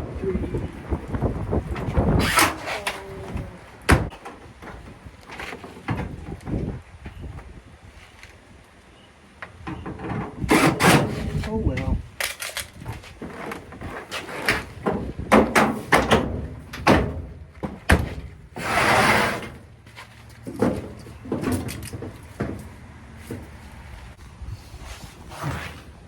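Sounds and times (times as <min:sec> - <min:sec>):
metal panels clunking: 0:12.3 - 0:19.7.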